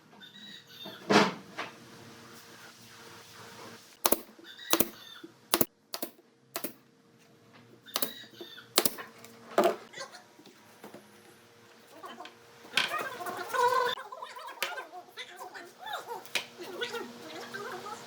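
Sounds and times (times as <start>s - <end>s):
hard objects knocking and clicking: 4.0s - 6.8s, 8.0s - 8.2s, 8.8s - 9.0s.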